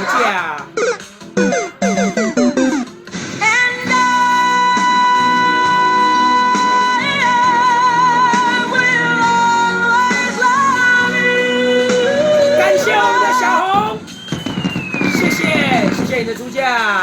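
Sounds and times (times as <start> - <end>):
background music: 0.0 - 17.0
singer holding high note: 12.4 - 14.0.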